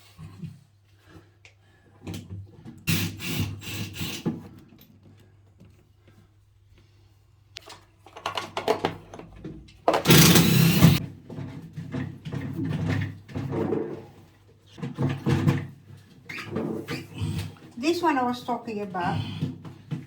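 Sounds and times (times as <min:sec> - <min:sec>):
objects rubbing and knocking: 0:09.9 - 0:11.0.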